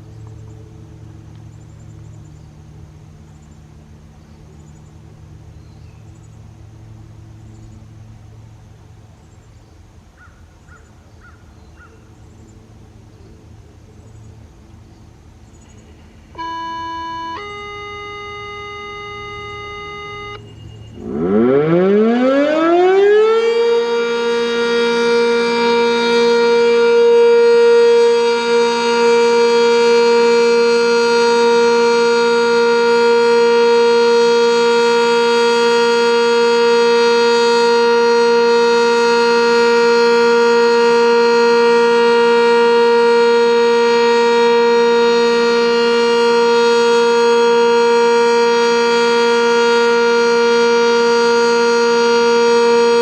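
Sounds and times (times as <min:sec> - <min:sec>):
outdoor warning siren: 0:16.1 - 0:53.0.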